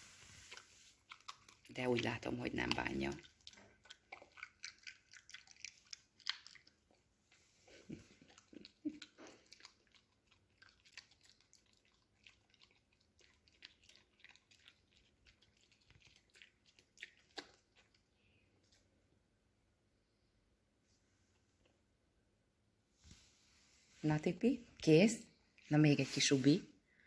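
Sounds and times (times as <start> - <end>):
dog chewing crunches: 0.3 - 7.1, 7.8 - 18.0.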